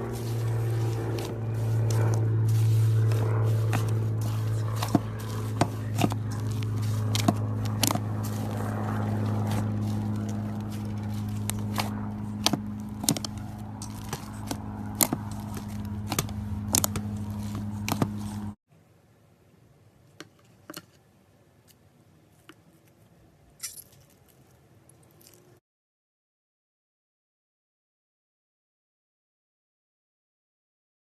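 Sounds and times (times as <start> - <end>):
steady low hum: 0.0 - 19.2.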